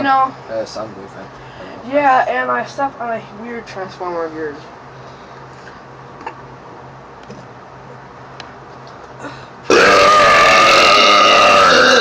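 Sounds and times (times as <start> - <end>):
person belching loudly: 9.7 - 12.0.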